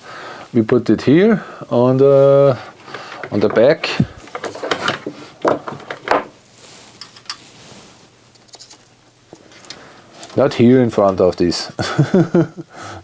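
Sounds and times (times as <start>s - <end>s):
handling knocks and clicks: 2.9s - 6.4s.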